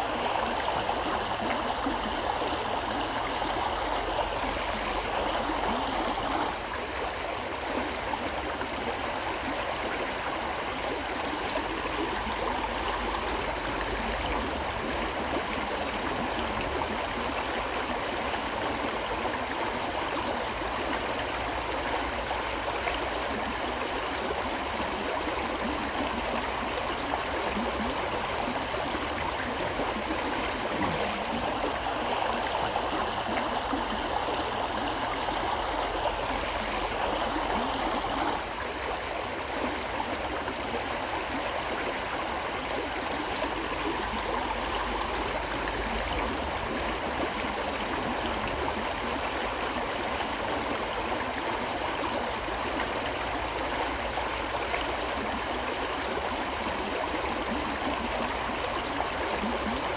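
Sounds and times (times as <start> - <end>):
river water rushing: 27.2 - 50.1.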